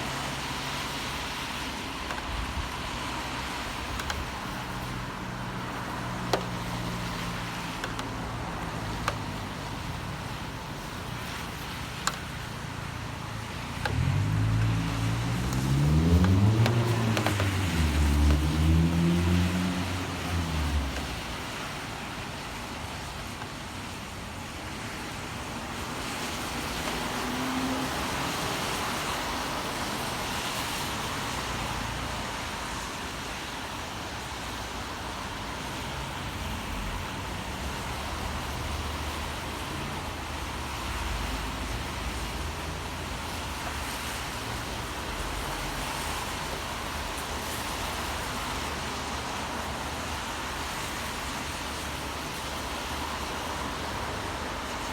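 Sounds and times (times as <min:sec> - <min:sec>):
rain hiss: 0:00.0 - 0:54.9
vehicles passing on wet streets: 0:00.0 - 0:54.9
heavy vehicle engine: 0:12.4 - 0:21.8.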